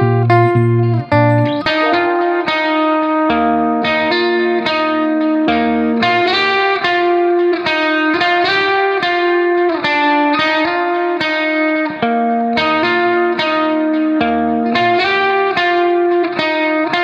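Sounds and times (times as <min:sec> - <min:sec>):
guitar picking notes: 0:00.0 - 0:17.0.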